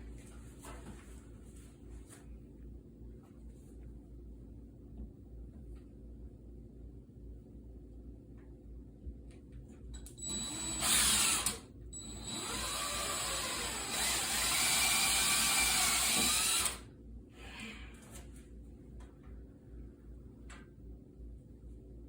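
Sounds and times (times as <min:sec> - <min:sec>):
power drill boring into drywall: 0:10.2 - 0:16.8.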